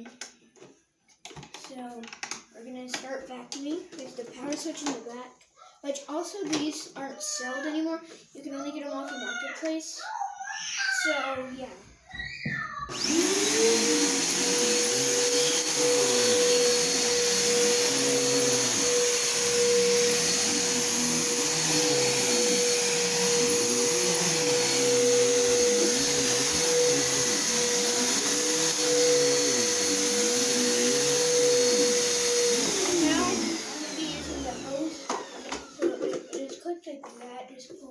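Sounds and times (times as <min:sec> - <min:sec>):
vacuum cleaner running: 0:12.9 - 0:36.4.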